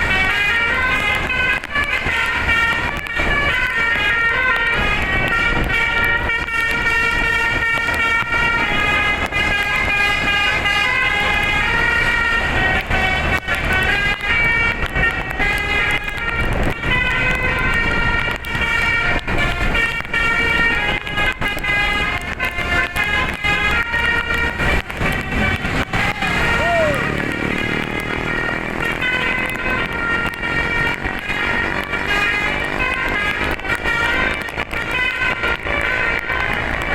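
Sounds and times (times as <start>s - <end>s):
musical air horn melody: 0.0s - 36.9s.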